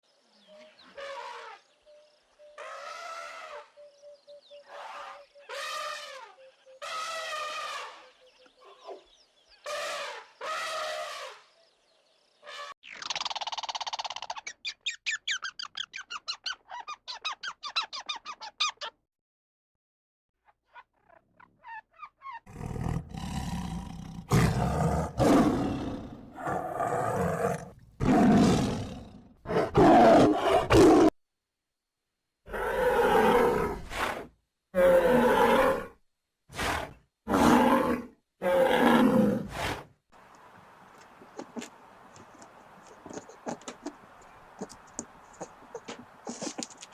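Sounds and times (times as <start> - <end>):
large animal roaring: 22.5 - 31.1, 32.5 - 34.1, 34.7 - 39.8.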